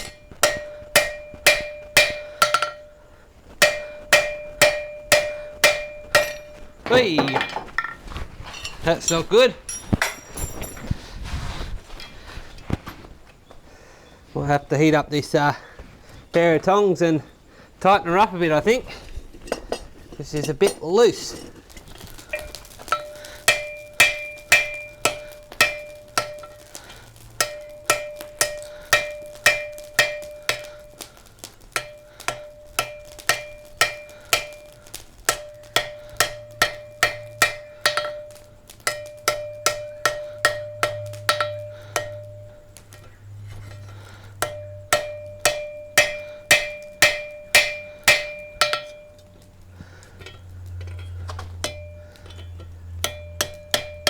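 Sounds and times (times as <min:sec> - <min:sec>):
hammer striking steel on anvil: 0:00.0 - 0:10.8, 0:22.2 - 0:54.0
anvil ringing: 0:00.0 - 0:10.9, 0:22.3 - 0:54.0.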